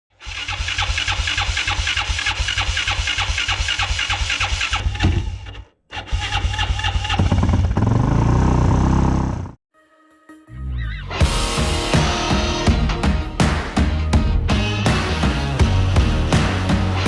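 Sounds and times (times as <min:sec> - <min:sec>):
quad engine running: 0:00.2 - 0:04.8, 0:06.8 - 0:09.5.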